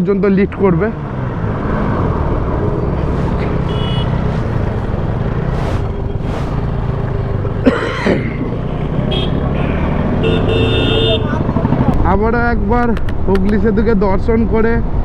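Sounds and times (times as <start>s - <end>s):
wind and road rush: 0.0s - 15.0s
motorcycle engine cruising: 0.3s - 7.6s
traffic swishing past: 1.0s - 7.7s.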